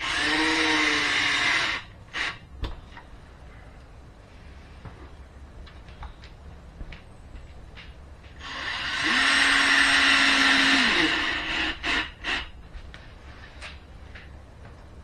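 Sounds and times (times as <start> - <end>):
power drill driving screw: 0.0 - 2.4, 8.4 - 12.5.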